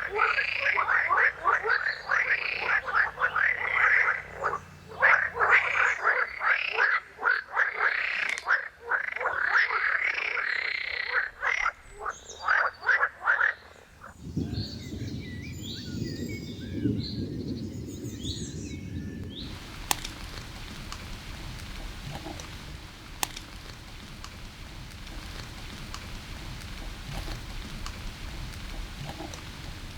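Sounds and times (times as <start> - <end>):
frogs croaking chorus: 0.0 - 14.6, 19.2 - 29.9
low dense croaking chorus: 0.0 - 18.1, 18.8 - 29.9
rain hissing: 13.9 - 29.9.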